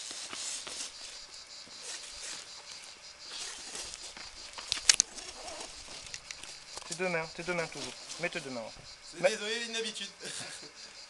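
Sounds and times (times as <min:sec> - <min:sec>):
rope hissing through descender: 0:00.0 - 0:04.2.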